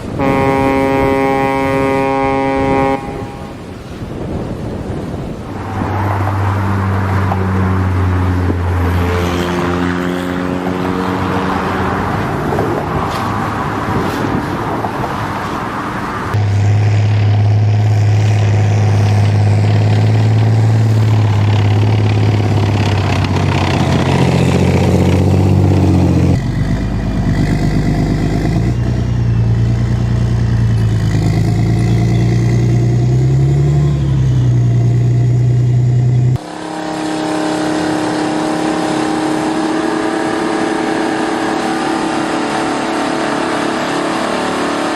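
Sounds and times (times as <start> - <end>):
vehicle engines revving: 4.7 - 44.9.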